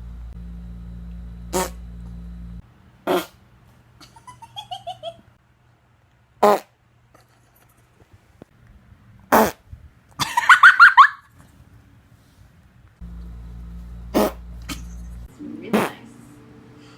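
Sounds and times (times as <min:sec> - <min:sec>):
faint high falling whines: 0:00.0 - 0:02.6
short farts: 0:01.5 - 0:01.8, 0:03.1 - 0:03.4, 0:06.4 - 0:06.7, 0:09.3 - 0:09.6, 0:14.1 - 0:15.1, 0:15.7 - 0:16.0.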